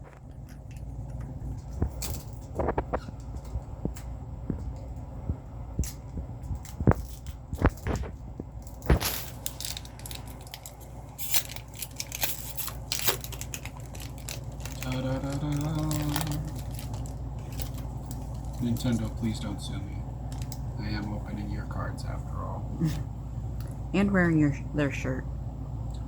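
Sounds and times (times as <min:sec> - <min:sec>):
foil wrapper crinkling and tearing: 0:05.8 - 0:19.6, 0:20.3 - 0:20.6.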